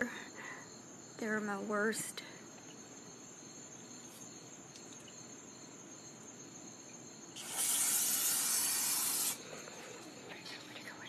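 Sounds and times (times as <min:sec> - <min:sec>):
crickets chirring: 0:00.0 - 0:11.0
aerosol spray hiss: 0:07.4 - 0:09.4.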